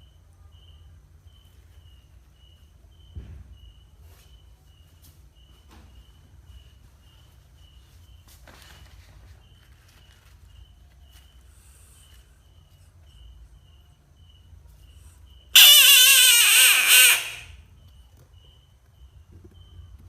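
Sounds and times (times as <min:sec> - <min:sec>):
frog screaming: 0:15.6 - 0:17.6.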